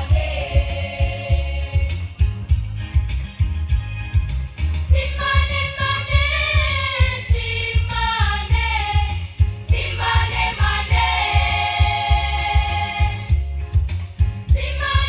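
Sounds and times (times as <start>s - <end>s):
choir singing in parts: 0.0s - 2.5s, 4.8s - 13.5s, 14.4s - 15.0s
accompaniment with low beat: 0.0s - 15.0s.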